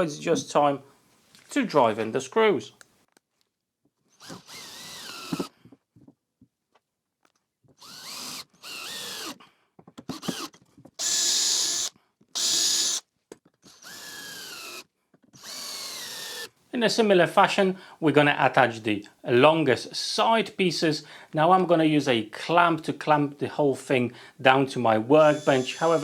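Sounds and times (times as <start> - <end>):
power drill driving screws: 4.1 - 5.5, 7.8 - 9.4, 10.0 - 16.6, 25.1 - 26.0.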